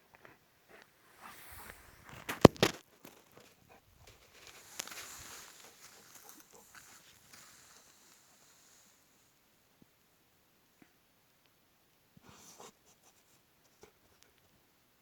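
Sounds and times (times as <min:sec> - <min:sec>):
scuffling and rustling: 0:00.7 - 0:09.3.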